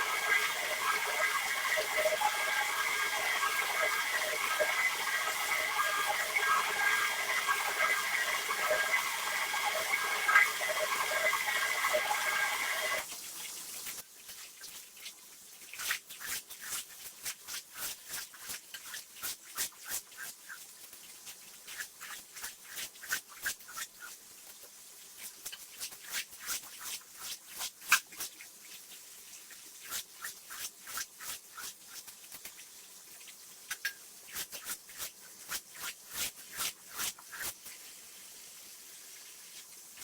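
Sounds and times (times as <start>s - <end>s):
machine whine: 0.0s - 13.0s
water rushing: 0.0s - 13.0s.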